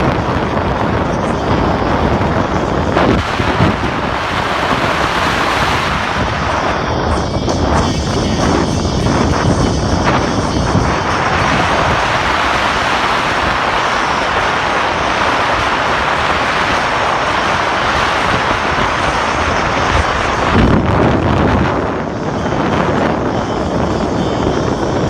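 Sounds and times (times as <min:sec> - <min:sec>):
low rumble: 0:00.0 - 0:25.0
wind buffeting microphone: 0:00.0 - 0:25.0.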